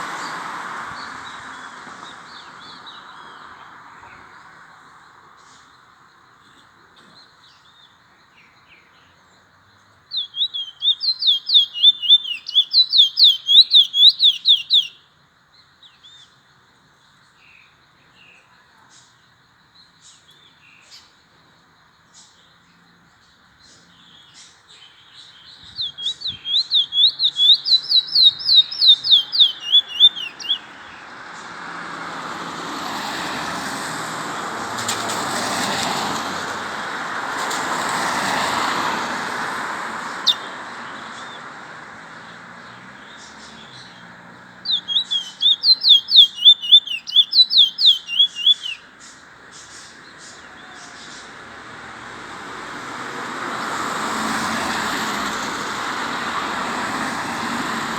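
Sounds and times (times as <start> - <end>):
road traffic: 0.0 - 57.9
bird whistling rapid notes: 10.2 - 14.9, 25.8 - 30.7, 40.2 - 40.5, 44.7 - 48.8.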